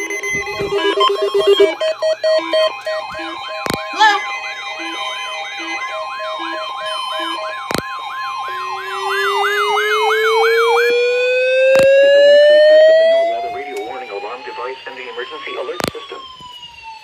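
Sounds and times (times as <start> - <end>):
sharp clicks: 0.0 - 8.6, 11.7 - 12.0, 15.7 - 16.1
steady alert tone: 0.0 - 12.4
low two-note beeping: 0.0 - 13.9
rising siren tone: 0.0 - 17.0.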